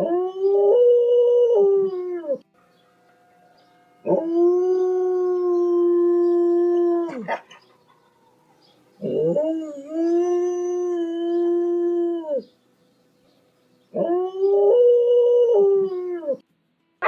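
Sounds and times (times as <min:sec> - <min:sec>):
dog howling: 0:04.0 - 0:12.5.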